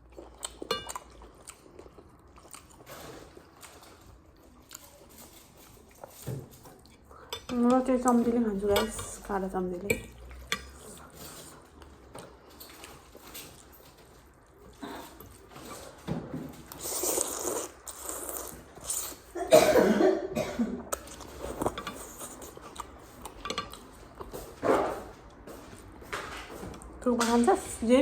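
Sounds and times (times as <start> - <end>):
woman coughing: 19.3 - 20.9.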